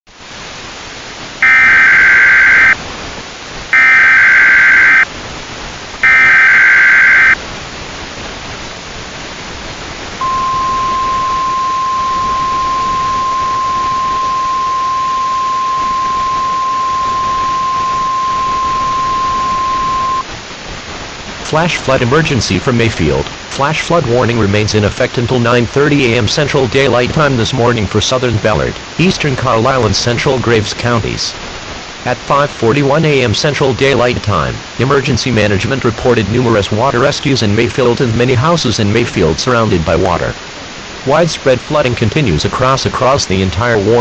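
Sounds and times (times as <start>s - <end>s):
static hiss: 0.1s - 44.0s
rasping digital data bursts: 1.4s - 2.8s, 3.8s - 5.1s, 6.0s - 7.4s
steady attention tone: 1.4s - 2.8s, 3.8s - 5.1s, 6.0s - 7.4s, 10.2s - 20.2s.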